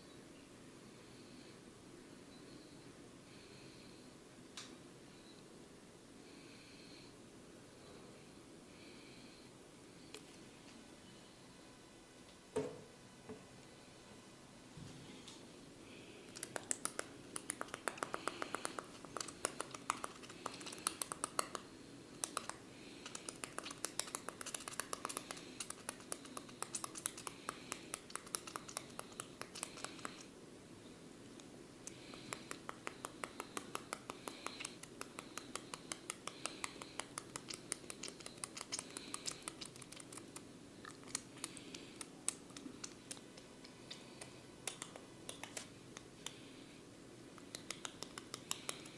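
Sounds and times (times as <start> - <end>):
fingers scratching hair and scalp: 16.4 - 21.6, 22.2 - 30.3, 32.0 - 45.7, 47.4 - 48.9.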